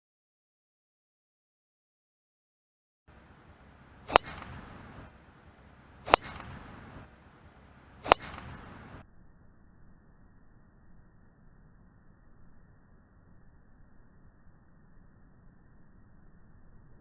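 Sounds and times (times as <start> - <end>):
golf club striking ball: 3.1 - 9.0
soft rush: 3.1 - 9.0.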